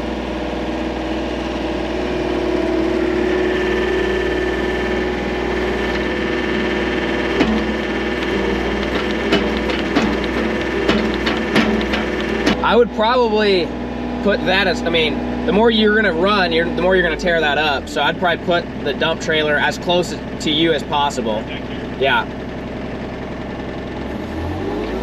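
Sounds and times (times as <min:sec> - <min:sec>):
digging machine engine running: 0:00.0 - 0:25.0
bucket clanks and knocks: 0:07.4 - 0:12.6.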